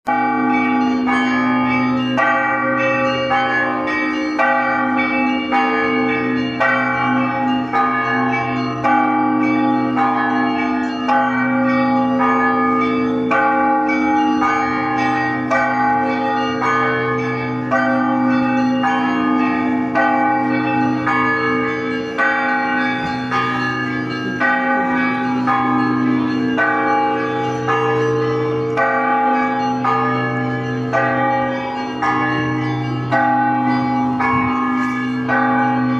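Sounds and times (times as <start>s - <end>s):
deep hum of large bells: 0.1s - 35.9s
small church bells ringing: 0.1s - 35.9s.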